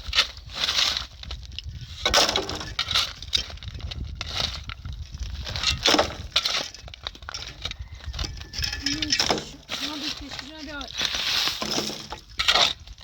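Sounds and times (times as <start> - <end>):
hard objects knocking and clattering: 2.0 - 9.7, 11.0 - 13.0.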